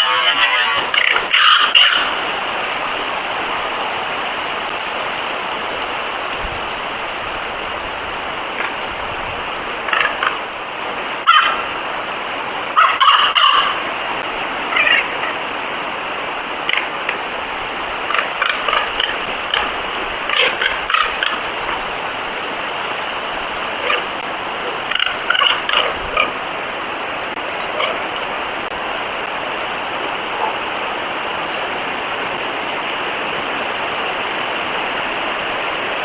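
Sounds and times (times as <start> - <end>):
animal calls: 0.0 - 2.2, 11.2 - 11.7, 12.7 - 13.9, 14.6 - 15.4, 18.0 - 26.5, 27.4 - 28.8, 29.4 - 30.8
outdoor hiss: 0.0 - 36.0.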